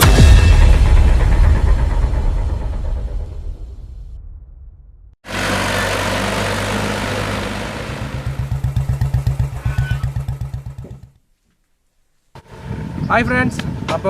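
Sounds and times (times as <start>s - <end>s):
engine running: 5.2s - 11.2s, 12.4s - 13.0s
wind or road noise: 5.2s - 11.2s, 12.1s - 14.0s.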